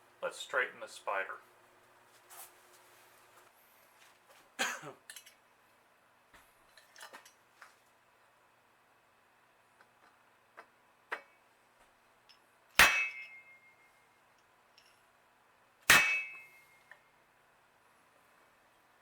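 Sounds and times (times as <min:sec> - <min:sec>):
hammer clanging on metal: 0:12.8 - 0:13.6, 0:15.9 - 0:16.8.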